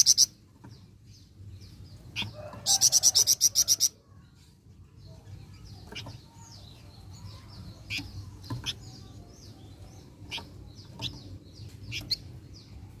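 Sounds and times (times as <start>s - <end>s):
bird chip calls: 0.0s - 0.4s
songbird chattering: 0.0s - 4.3s, 4.9s - 13.0s.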